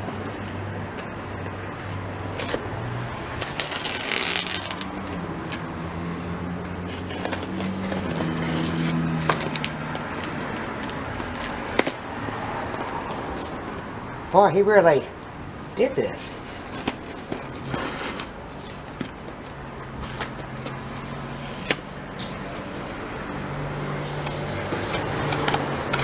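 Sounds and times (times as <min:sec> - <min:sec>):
packaging crackling and tearing: 0:03.4 - 0:05.2, 0:06.9 - 0:12.0.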